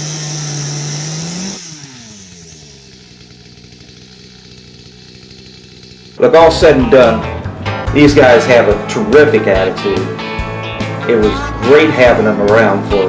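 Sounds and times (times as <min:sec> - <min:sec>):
motor running and winding down: 0:00.0 - 0:06.6, 0:10.8 - 0:12.4.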